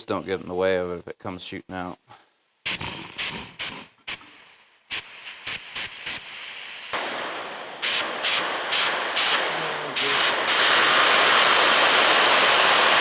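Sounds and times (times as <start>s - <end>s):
steady air hiss: 2.6s - 13.0s
compressed air blow gun bursts: 2.7s - 13.0s.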